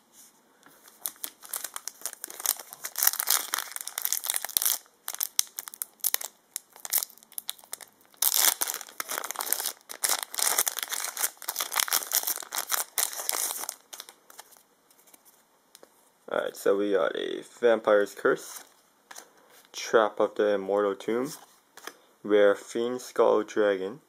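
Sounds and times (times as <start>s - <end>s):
foil wrapper tearing and crinkling: 1.0s - 14.5s.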